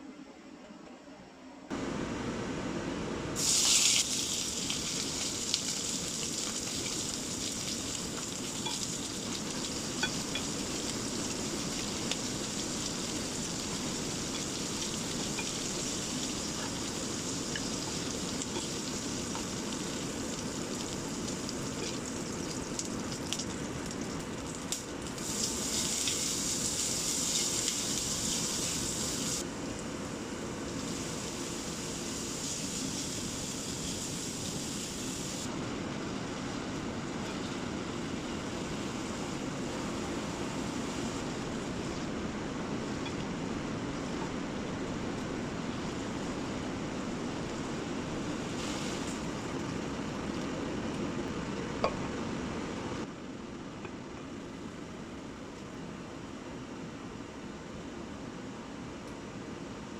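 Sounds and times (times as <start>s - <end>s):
food sizzling in oil: 3.4s - 29.4s, 30.6s - 35.5s, 48.2s - 49.5s.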